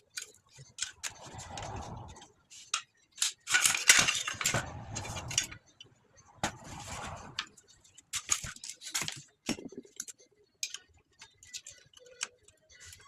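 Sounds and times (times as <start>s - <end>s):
rattling metal scrape: 0.7s - 5.6s
metal parts clinking: 2.6s - 5.6s.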